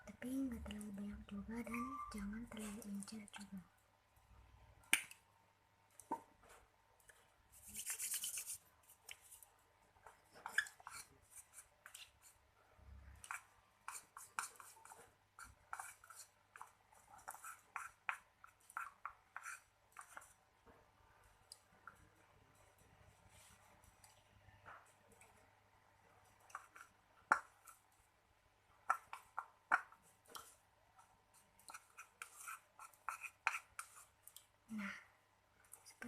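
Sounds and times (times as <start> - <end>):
utensil scraping and tapping: 13.2 - 20.4, 28.8 - 34.5.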